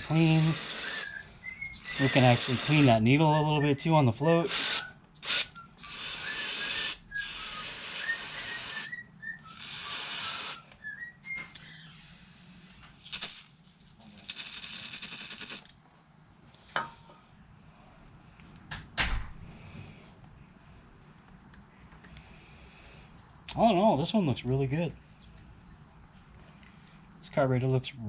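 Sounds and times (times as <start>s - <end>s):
aerosol spray hissing: 0.0s - 1.1s, 1.8s - 3.0s, 4.4s - 8.9s, 9.5s - 10.6s, 12.9s - 15.7s.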